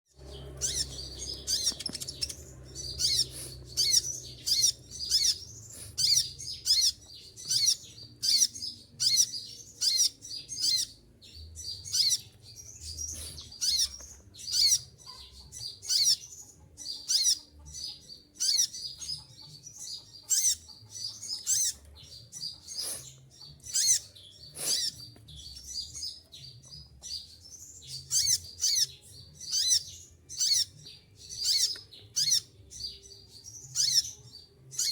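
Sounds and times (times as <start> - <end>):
bird chirping shrilly: 0.4 - 10.9, 13.0 - 14.8, 22.7 - 25.0.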